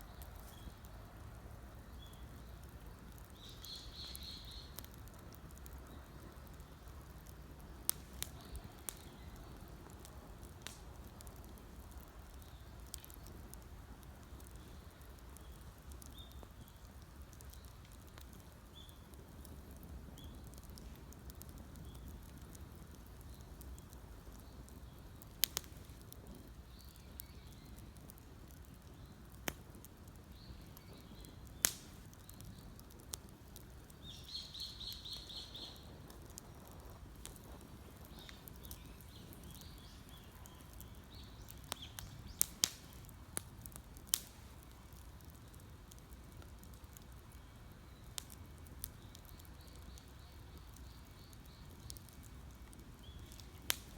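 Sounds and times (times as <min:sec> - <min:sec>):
campfire crackling and popping: 0:00.0 - 0:53.9
faint bird chirps: 0:03.3 - 0:04.8, 0:34.0 - 0:35.9.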